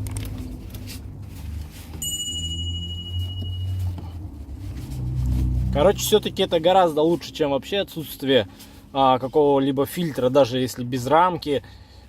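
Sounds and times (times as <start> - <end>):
high-pitched electronic chime: 2.0 - 3.8
low rumble: 3.0 - 7.3.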